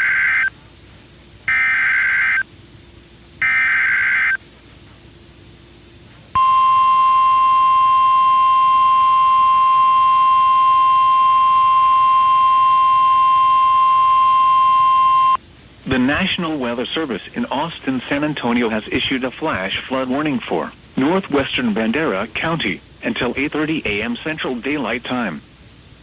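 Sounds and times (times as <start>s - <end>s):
buzzing digital data warble: 0.0s - 0.5s, 1.5s - 2.5s, 3.4s - 4.4s
steady alarm tone: 0.0s - 0.5s, 1.5s - 2.5s, 3.4s - 4.4s, 6.4s - 15.4s.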